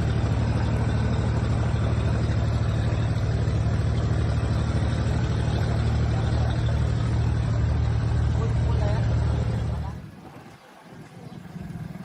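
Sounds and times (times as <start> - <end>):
engine droning steadily: 0.0 - 12.0.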